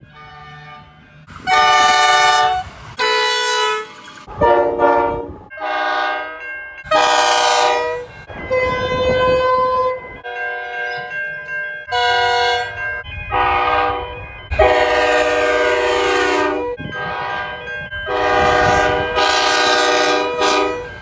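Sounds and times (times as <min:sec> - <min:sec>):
locomotive air horn blasts: 0:01.4 - 0:06.3, 0:06.9 - 0:10.0, 0:11.9 - 0:17.5, 0:18.1 - 0:21.0.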